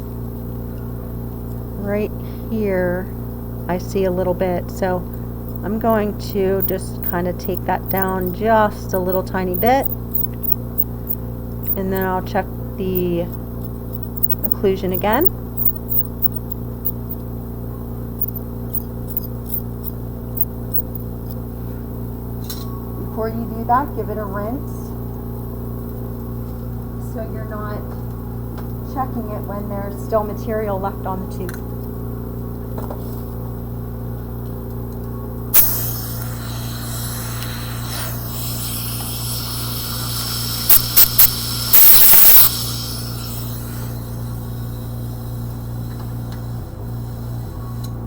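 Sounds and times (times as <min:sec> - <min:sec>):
steady low hum: 0:00.0 - 0:48.0
metal instrument clicking and scraping: 0:05.5 - 0:12.1, 0:13.0 - 0:17.2, 0:18.2 - 0:21.4
dental suction rushing: 0:05.5 - 0:12.2, 0:12.8 - 0:17.2, 0:18.2 - 0:21.0, 0:35.6 - 0:45.1
air spurts: 0:35.6 - 0:44.2.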